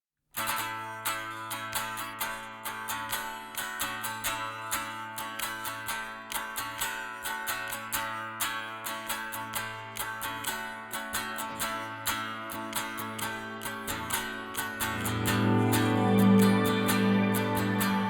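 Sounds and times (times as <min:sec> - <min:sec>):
guitar strumming: 0:00.4 - 0:18.0
held low notes: 0:13.9 - 0:18.0.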